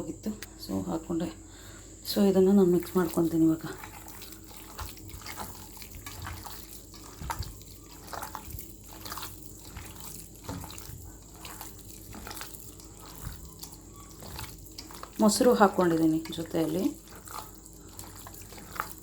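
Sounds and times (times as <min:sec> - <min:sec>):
wet squelches of food mixed by hand: 0:02.2 - 0:19.0.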